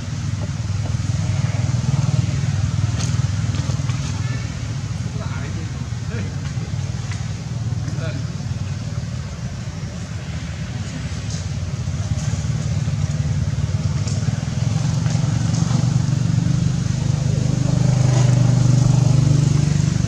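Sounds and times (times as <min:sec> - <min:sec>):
vehicle engine humming: 0:00.0 - 0:20.0.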